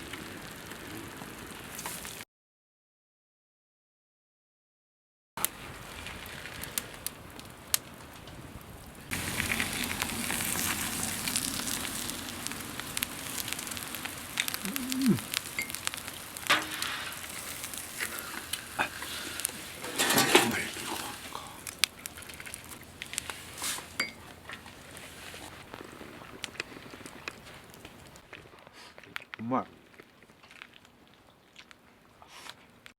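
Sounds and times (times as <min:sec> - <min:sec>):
food sizzling in a pan: 0:09.1 - 0:28.2
utensils knocking against pan: 0:16.5 - 0:17.0.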